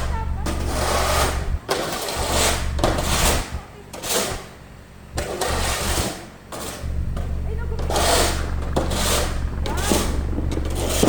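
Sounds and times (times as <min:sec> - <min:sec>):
rushing scraping noise: 0:00.0 - 0:04.4, 0:06.8 - 0:11.0
car engine humming: 0:00.0 - 0:05.6, 0:06.8 - 0:11.0.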